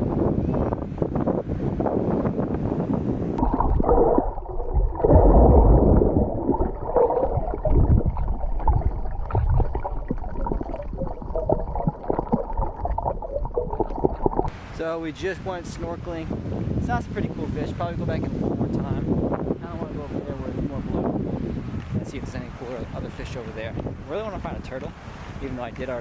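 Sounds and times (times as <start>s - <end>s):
wind noise: 0.0s - 26.0s
muffled underwater sloshing: 3.3s - 14.8s.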